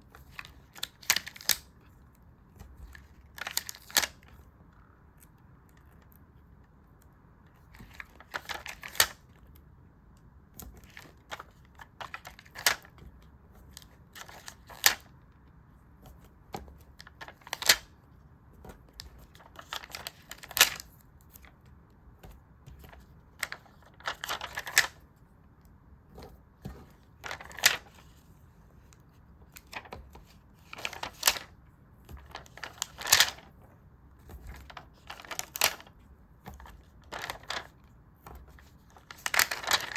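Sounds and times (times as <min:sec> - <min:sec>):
stickers and paper rustling: 0:07.5 - 0:09.6, 0:10.6 - 0:25.1, 0:26.0 - 0:39.9.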